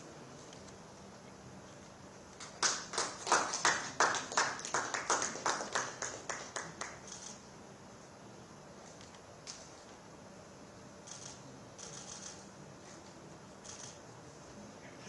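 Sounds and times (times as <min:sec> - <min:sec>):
hand clapping: 0:02.4 - 0:07.1.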